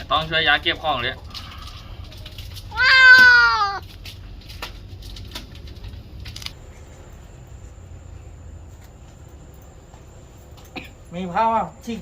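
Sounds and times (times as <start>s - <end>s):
cat yowling in pain: 2.7s - 3.8s.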